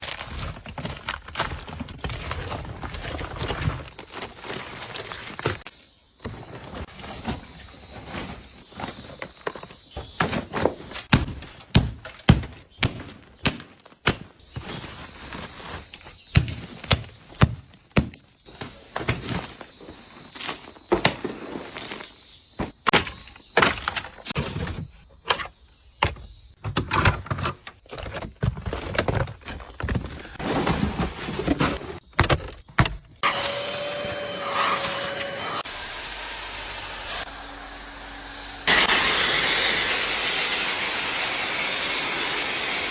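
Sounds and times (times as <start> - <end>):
car parts and tools clattering: 0.0 - 12.6, 14.6 - 33.2.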